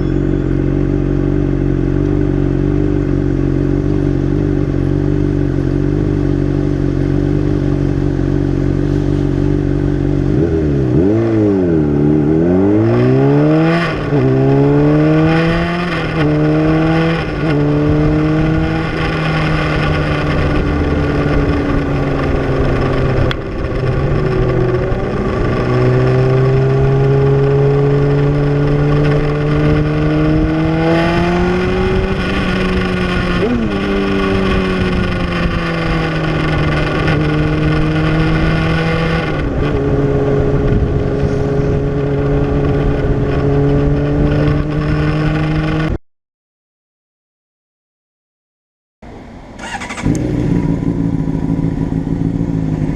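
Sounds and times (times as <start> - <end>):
motorcycle engine revving: 0.0 - 46.0, 49.6 - 52.9.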